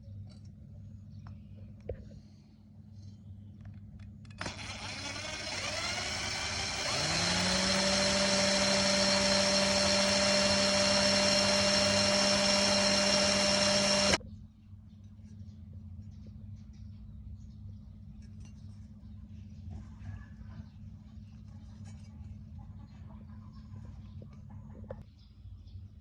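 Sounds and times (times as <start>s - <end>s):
small electric motor spinning: 4.4s - 14.2s.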